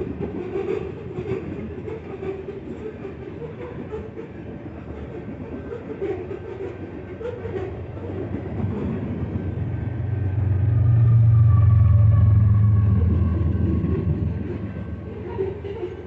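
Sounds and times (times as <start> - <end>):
train rumbling past: 0.0 - 16.0
deep steady hum: 9.6 - 15.2.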